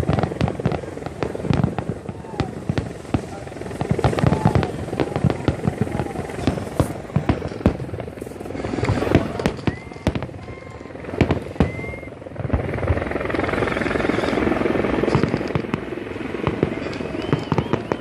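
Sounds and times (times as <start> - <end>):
fireworks banging: 0.0 - 18.0
fireworks crackling: 0.0 - 18.0
fireworks whistling: 0.0 - 18.0.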